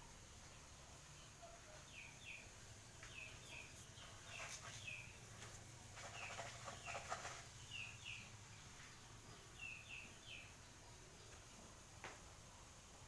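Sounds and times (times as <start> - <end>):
high falling bird chirps: 1.9 - 5.4
harsh bird calls: 6.0 - 8.3.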